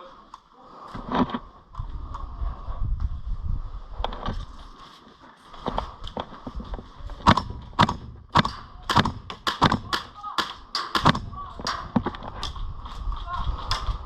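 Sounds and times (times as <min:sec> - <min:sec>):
airsoft rifle shots: 0:07.2 - 0:12.1.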